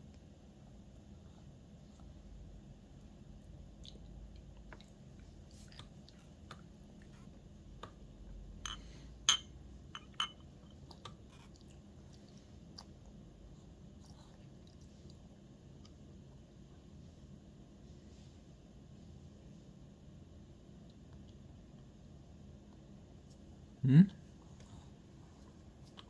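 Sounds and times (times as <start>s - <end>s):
baby chewing and smacking: 3.3s - 8.1s, 10.0s - 16.1s
tableware clicks and clinks: 8.6s - 10.4s.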